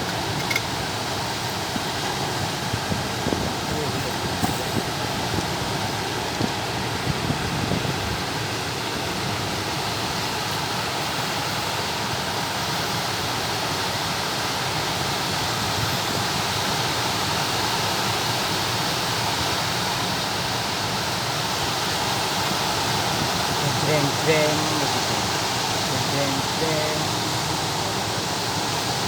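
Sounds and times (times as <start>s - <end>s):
water rushing around boat: 0.0s - 29.0s
wind: 0.0s - 29.0s.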